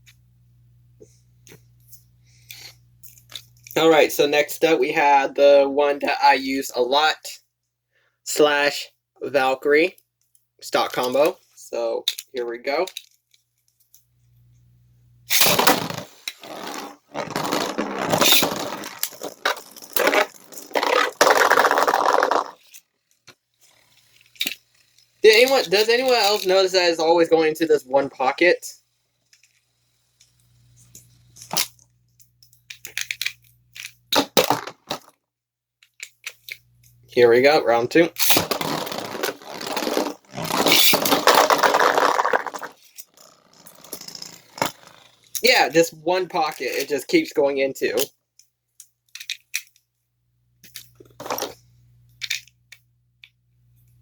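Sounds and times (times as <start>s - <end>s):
spinning tops clashing and scraping: 15.3s - 23.0s, 23.6s - 28.3s, 29.3s - 35.0s, 38.1s - 47.2s.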